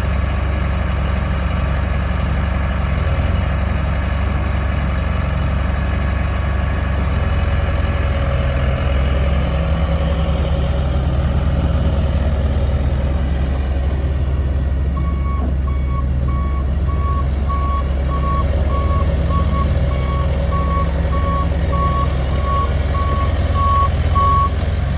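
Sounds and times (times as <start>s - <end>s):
diesel engine running: 0.0s - 24.9s
reversing alarm beeping: 15.0s - 24.6s.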